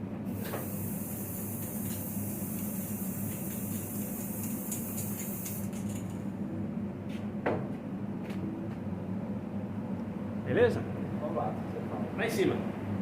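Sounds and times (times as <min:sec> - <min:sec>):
steady low hum: 0:00.0 - 0:13.0
aerosol spray can hissing: 0:00.3 - 0:06.0.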